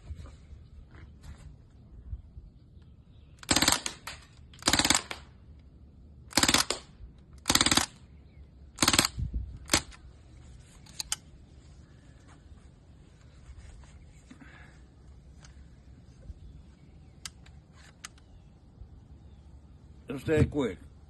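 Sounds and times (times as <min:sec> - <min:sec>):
bb rifle full-auto bursts: 0:03.4 - 0:05.3, 0:06.3 - 0:08.0, 0:08.8 - 0:10.0.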